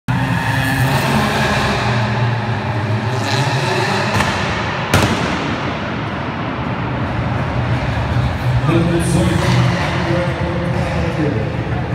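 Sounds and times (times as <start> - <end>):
loud car engine running: 0.1 - 11.9
engine backfire bang: 4.0 - 6.1.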